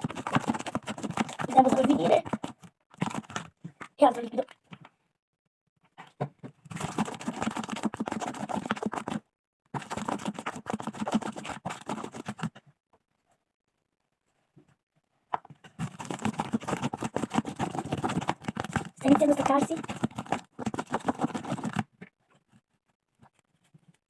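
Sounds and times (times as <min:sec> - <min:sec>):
crunchy slime being mixed: 0:00.0 - 0:04.4, 0:06.7 - 0:09.2, 0:09.8 - 0:12.6, 0:15.7 - 0:21.9.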